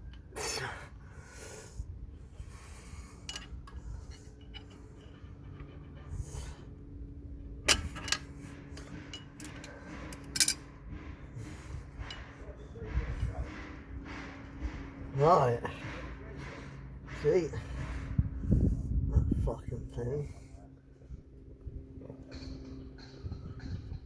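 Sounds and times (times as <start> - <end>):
low rumble: 0.9 - 24.0
tools knocking and clinking: 7.7 - 10.9, 11.9 - 15.0.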